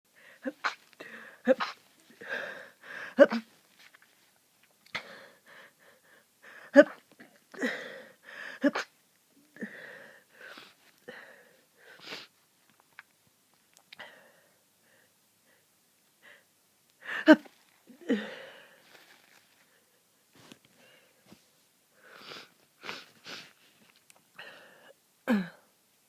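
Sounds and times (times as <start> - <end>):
person sneezing: 0.4 - 2.5, 3.1 - 3.5, 8.6 - 8.9.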